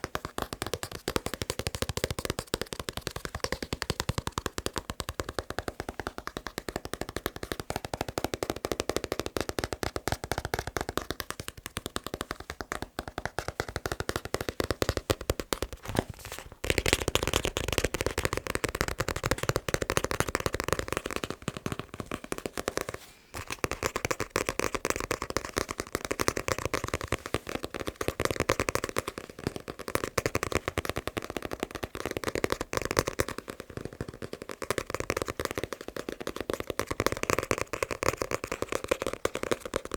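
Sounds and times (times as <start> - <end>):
fast tapping on a book: 0.0 - 39.9.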